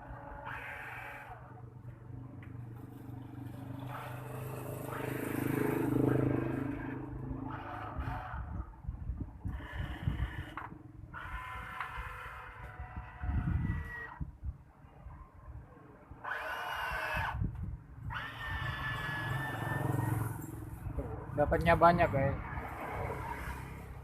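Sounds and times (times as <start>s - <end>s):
small electric motors whirring: 0.0s - 1.7s, 3.5s - 14.4s, 16.2s - 20.6s.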